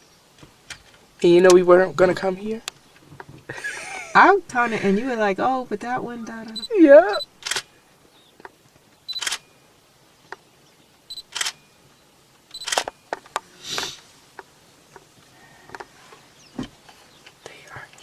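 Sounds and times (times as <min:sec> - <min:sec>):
camera shutter clicking: 0:07.4 - 0:07.7, 0:09.2 - 0:09.4, 0:11.3 - 0:11.6, 0:12.5 - 0:13.0.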